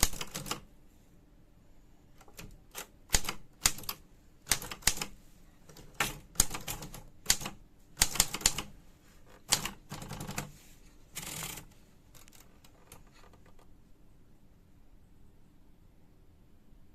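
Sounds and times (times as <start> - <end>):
typewriter key strikes: 2.3 - 5.1.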